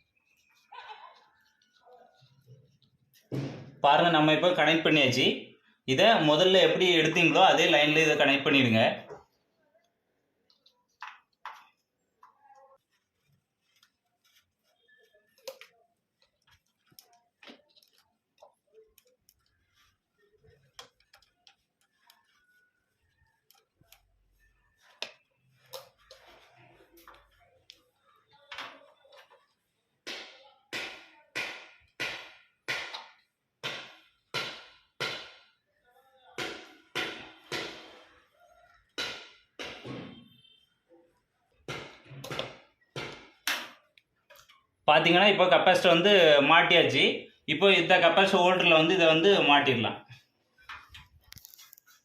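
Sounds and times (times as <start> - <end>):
hands rustling small parts: 50.5 - 52.0.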